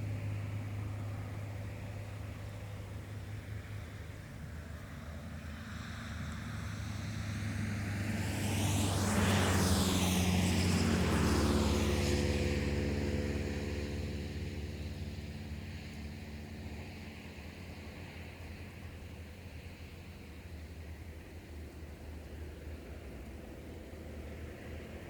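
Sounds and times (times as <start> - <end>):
vehicle driving past: 5.6 - 15.8.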